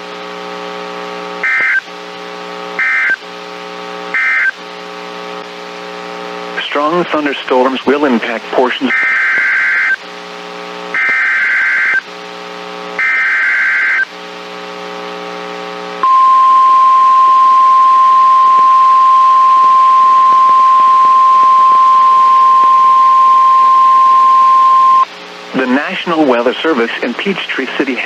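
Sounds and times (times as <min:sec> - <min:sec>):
steady alarm tone: 0:16.0 - 0:25.1
low buzz: 0:16.0 - 0:25.2.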